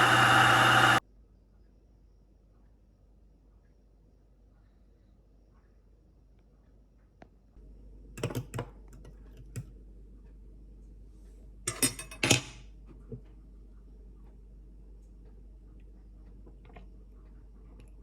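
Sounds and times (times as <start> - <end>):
kitchenware clattering: 11.7 - 12.6.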